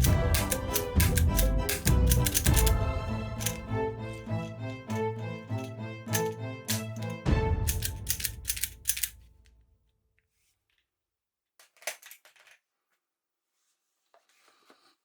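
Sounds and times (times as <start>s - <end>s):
sharp clicks: 0.0s - 3.7s, 6.1s - 9.3s
toy gun mechanism clicking: 0.0s - 3.7s, 6.1s - 9.4s, 11.6s - 12.6s
music: 0.0s - 9.4s.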